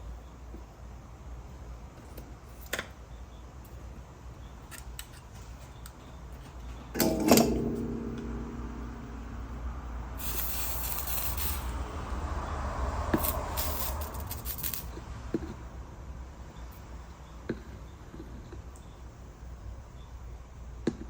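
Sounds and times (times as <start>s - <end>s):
sharp metallic clank: 7.0s - 11.8s
vehicle passing: 8.1s - 15.3s.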